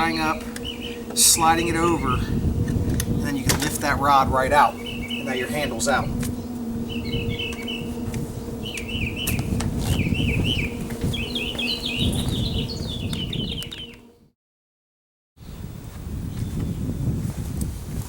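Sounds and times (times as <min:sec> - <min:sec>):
low hum and rumble: 0:00.0 - 0:13.1
small birds chirping: 0:00.0 - 0:14.2.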